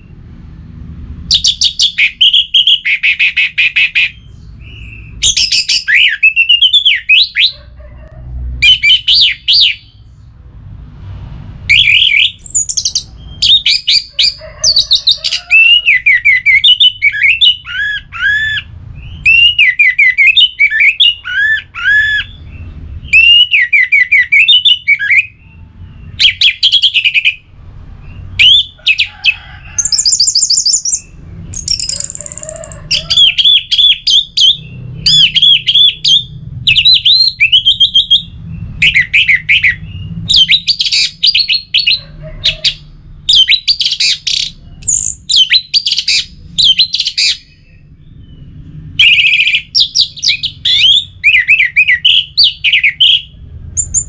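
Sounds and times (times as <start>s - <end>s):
bird singing whistled trills: 1.3s - 7.6s, 8.6s - 10.0s, 15.5s - 27.4s, 29.9s - 42.0s, 43.3s - 54.0s.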